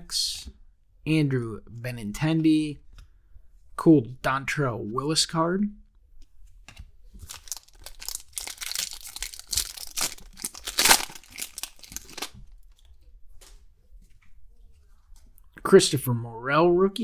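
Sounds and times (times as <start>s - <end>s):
foil wrapper tearing and crinkling: 7.2s - 12.8s.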